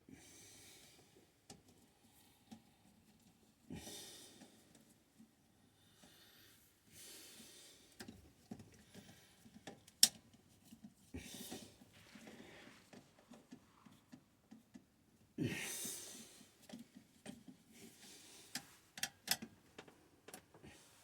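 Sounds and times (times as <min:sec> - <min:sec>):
small knocks and rustles: 0:08.0 - 0:15.3, 0:16.5 - 0:18.0, 0:18.6 - 0:20.7.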